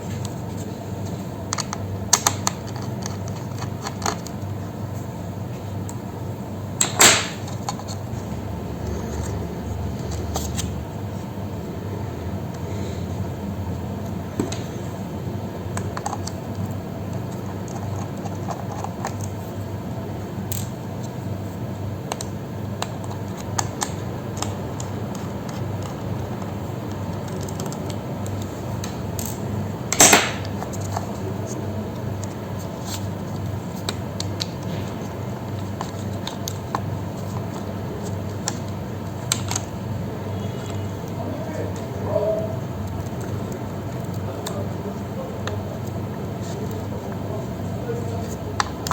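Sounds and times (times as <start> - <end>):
steady low hum: 0.0 - 48.9
clicks and taps of handled parts: 6.8 - 8.0, 15.8 - 19.4, 33.4 - 39.7.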